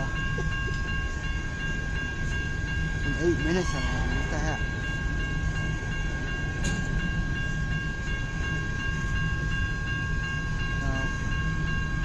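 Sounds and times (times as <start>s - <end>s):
train wheels rumbling on rail: 0.0s - 12.0s.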